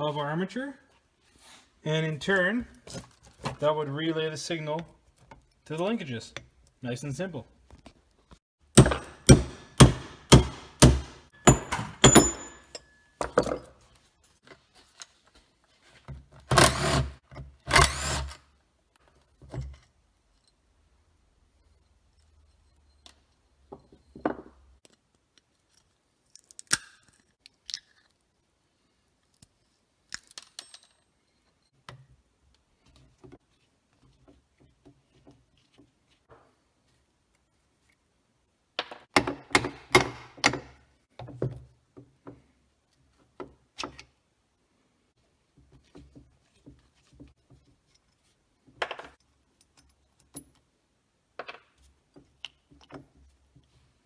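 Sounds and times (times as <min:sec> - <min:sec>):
metal parts and tools clanking: 0:08.8 - 0:13.8.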